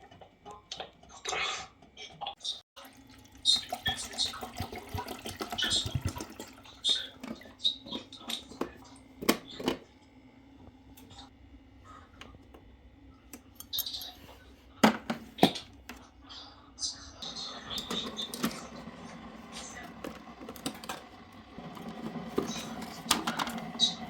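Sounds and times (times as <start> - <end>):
dishes and utensils clinking: 13.5 - 15.6.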